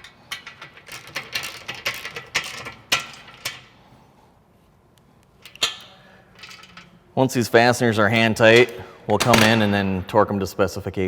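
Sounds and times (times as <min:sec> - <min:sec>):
metal screws clicking: 0:05.4 - 0:07.0.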